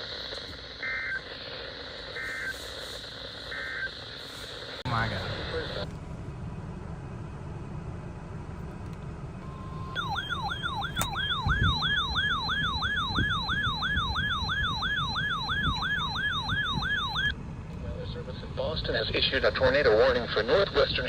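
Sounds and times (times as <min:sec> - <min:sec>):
weather radio siren alarm: 0:00.0 - 0:05.9, 0:09.4 - 0:17.4
short steady beep: 0:02.1 - 0:02.6, 0:09.4 - 0:12.7.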